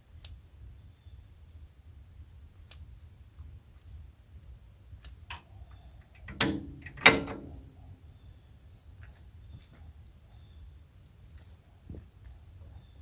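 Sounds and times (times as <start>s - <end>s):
light click: 6.1s - 7.9s
loud metallic clanks: 6.1s - 8.0s.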